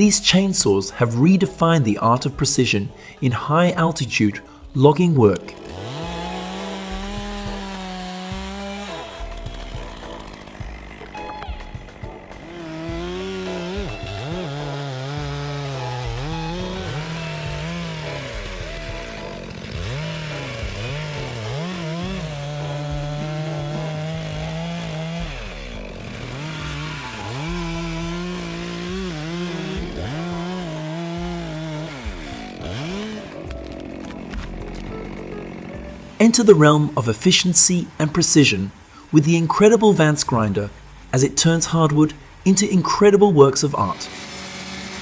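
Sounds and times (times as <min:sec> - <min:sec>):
chainsaw cutting wood: 0:05.3 - 0:45.0.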